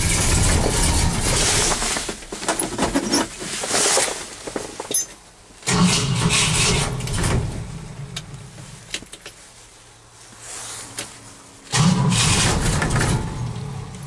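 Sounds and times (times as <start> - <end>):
engine cranking by starter motor: 0.0 - 2.2, 5.6 - 8.3, 11.7 - 14.0.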